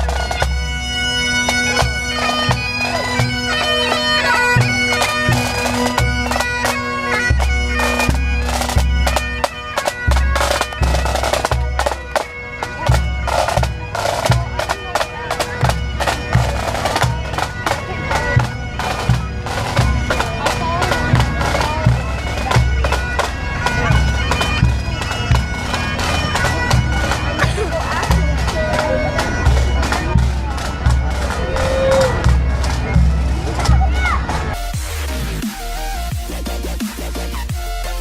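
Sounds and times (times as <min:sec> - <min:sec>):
bagpipe melody with drone: 0:00.0 - 0:38.0
bass drum beats: 0:26.7 - 0:38.0
snare drum strokes: 0:34.6 - 0:38.0.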